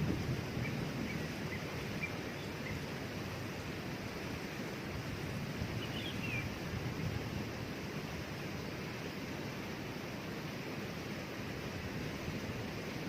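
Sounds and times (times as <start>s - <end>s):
waterfall rushing: 0.0s - 13.0s
faint bird chirps: 0.6s - 2.9s, 5.8s - 6.6s.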